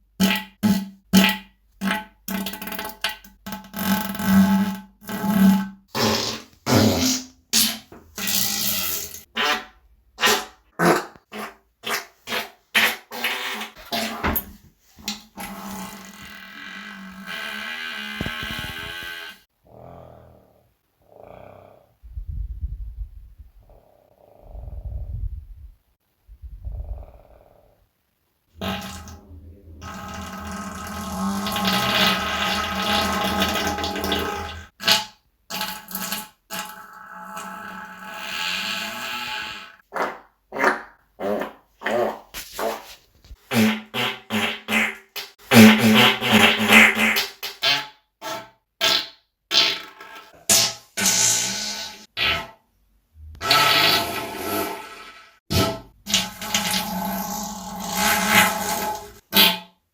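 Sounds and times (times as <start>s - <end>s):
long drawn-out fart: 0.2s - 19.5s, 28.5s - 52.6s, 53.2s - 59.8s
short farts: 3.5s - 19.4s, 28.6s - 35.7s, 40.0s - 52.6s, 53.4s - 54.8s.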